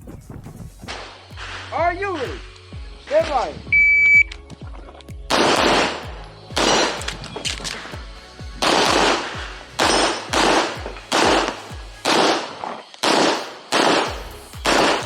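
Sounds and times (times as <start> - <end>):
background music with steady beat: 0.0 - 15.0
pistol shots with echo: 5.3 - 8.0, 8.6 - 15.0.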